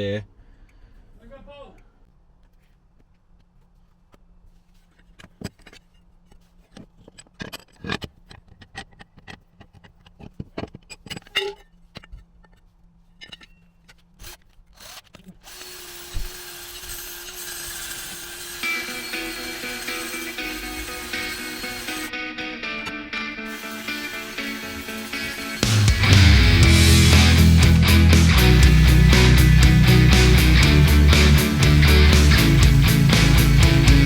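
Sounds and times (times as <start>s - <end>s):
guitar music: 18.6s - 34.0s.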